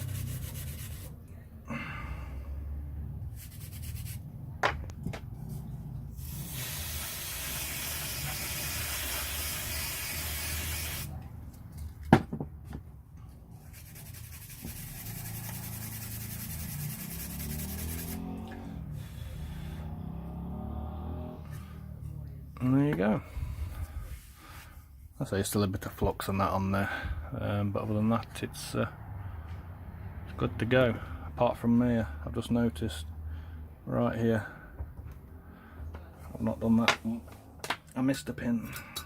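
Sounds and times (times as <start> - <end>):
aerosol spray hissing: 6.2 - 11.1
rubbing: 13.6 - 18.2.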